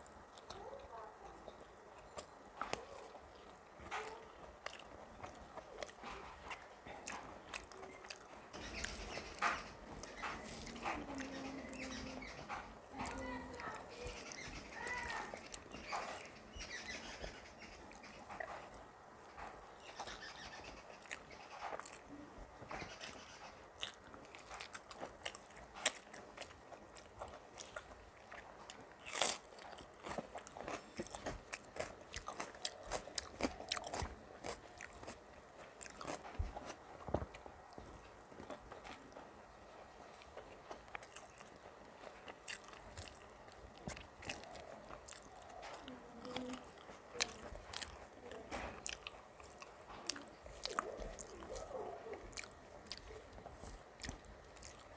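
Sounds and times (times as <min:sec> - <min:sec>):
crunchy chewing: 0:00.0 - 0:54.9.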